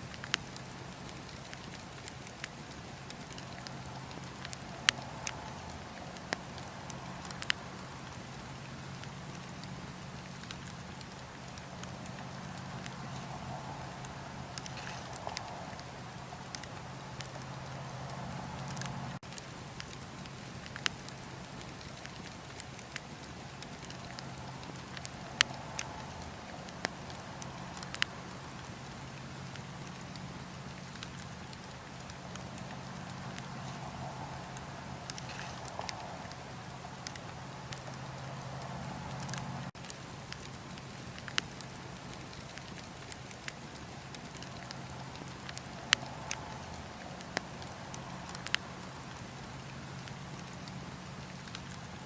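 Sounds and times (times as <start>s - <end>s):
bonfire crackling: 0.0s - 52.0s
burning wood popping: 0.0s - 52.0s
low steady hum: 0.0s - 52.0s
steady hiss: 0.0s - 52.0s.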